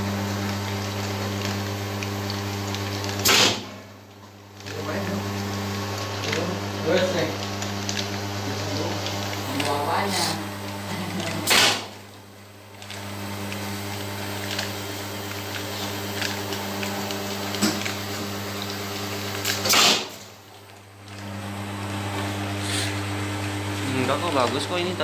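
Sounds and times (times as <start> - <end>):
machine humming: 0.0 - 25.0.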